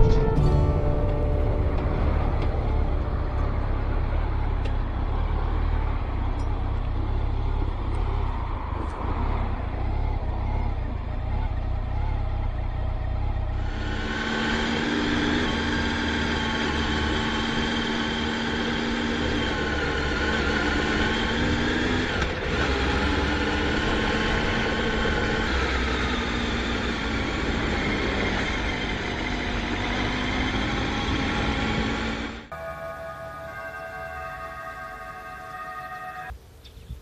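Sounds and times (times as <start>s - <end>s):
dense low rumble: 0.0s - 8.8s
motorcycle engine running: 0.0s - 8.8s, 9.4s - 32.6s.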